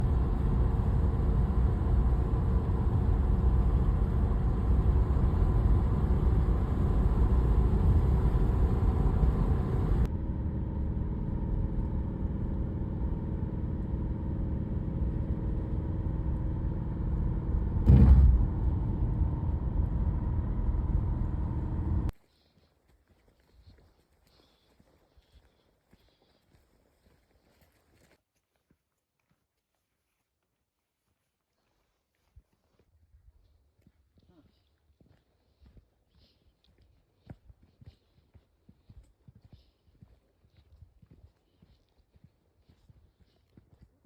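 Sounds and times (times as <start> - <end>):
car engine and tyres rumbling: 0.0 - 22.2.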